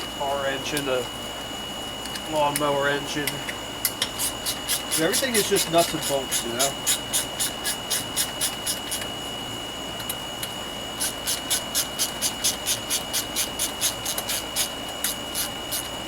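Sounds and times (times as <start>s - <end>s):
hand ratchet clicking: 4.1s - 9.1s, 11.0s - 15.9s.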